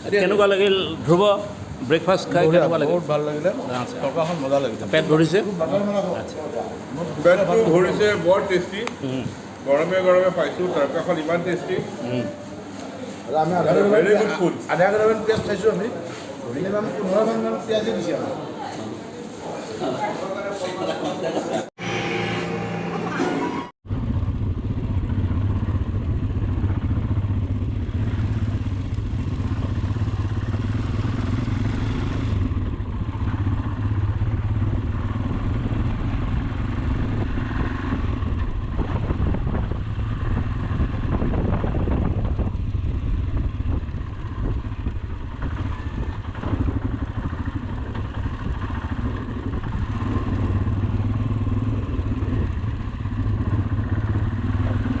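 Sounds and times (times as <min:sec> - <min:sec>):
motorcycle engine running: 0:23.8 - 0:55.0
rattles from rough road: 0:23.9 - 0:55.0.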